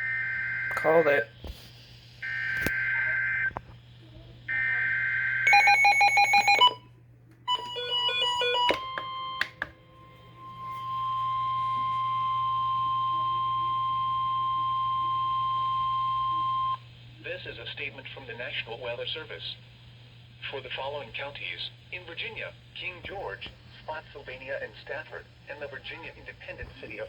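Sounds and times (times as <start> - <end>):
steady warning alarm tone: 4.5 - 6.8, 7.5 - 16.8.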